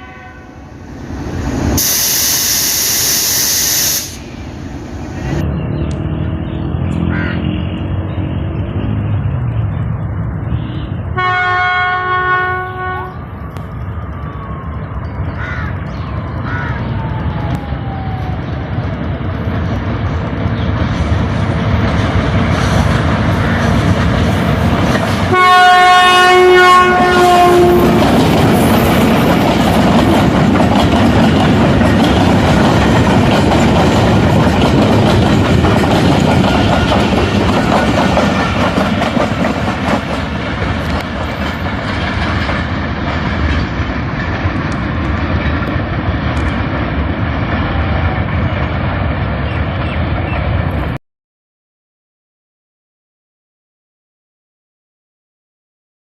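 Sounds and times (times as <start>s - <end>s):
locomotive horn blast: 0.0s - 0.8s, 1.8s - 4.3s, 10.6s - 13.3s, 25.3s - 28.1s
wagons rumbling on rails: 0.0s - 3.0s, 3.8s - 51.0s
diesel locomotive running: 0.0s - 51.0s.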